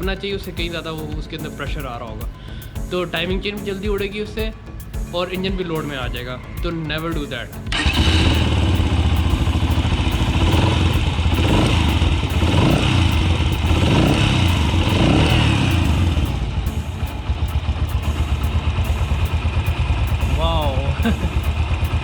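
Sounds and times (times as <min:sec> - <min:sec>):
motorcycle engine revving: 0:07.7 - 0:22.0.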